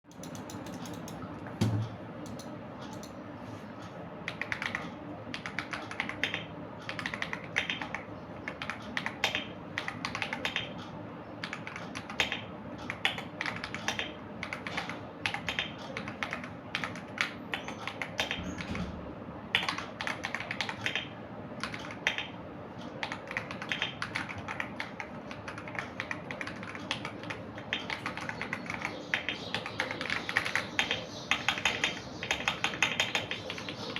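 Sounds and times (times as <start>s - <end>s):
mechanical keyboard typing: 0.1s - 1.2s, 4.3s - 10.8s, 11.4s - 18.7s, 19.6s - 22.3s, 23.0s - 33.9s.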